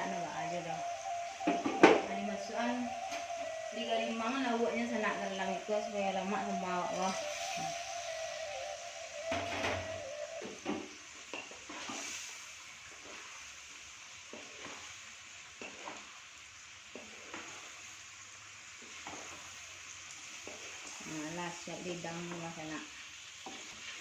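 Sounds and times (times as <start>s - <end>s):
food sizzling in a pan: 0.0s - 24.0s
spatula scraping a pan: 11.4s - 13.6s, 14.3s - 16.2s, 16.9s - 18.0s, 18.8s - 19.6s, 20.3s - 21.1s, 23.4s - 24.0s.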